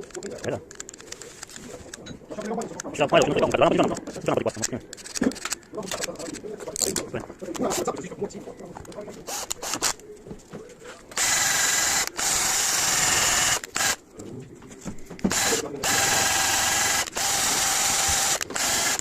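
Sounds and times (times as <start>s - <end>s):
power tool running: 11.1s - 14.0s, 15.3s - 19.0s.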